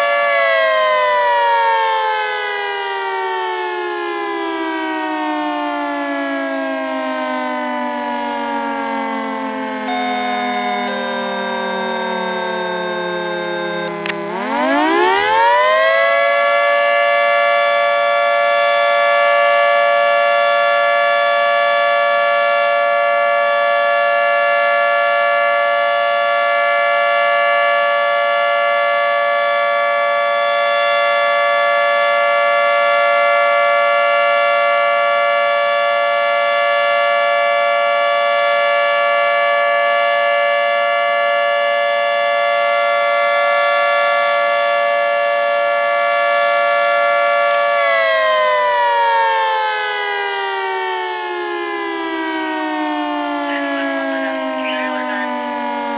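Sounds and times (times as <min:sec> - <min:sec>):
warning siren winding up: 0:08.0 - 0:17.9, 0:47.0 - 0:55.9.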